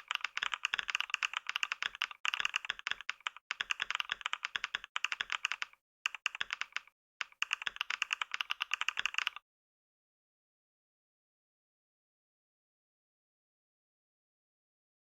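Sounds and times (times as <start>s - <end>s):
fast typing on keyboard: 0.0s - 9.4s.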